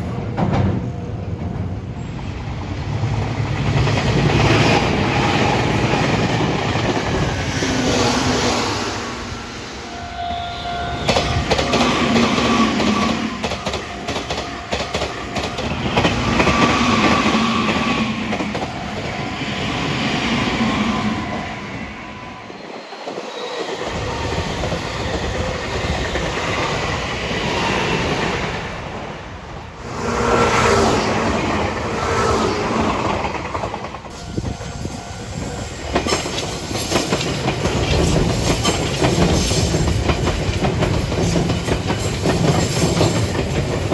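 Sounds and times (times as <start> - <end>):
train humming tones: 0.0 - 43.9
wheels clacking over rail joints: 35.4 - 43.9.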